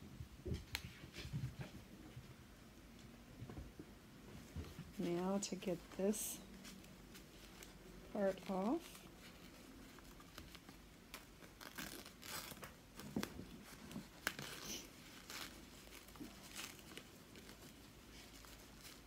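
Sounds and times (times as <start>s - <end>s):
wrapping crinkling and tearing: 5.1s - 19.0s.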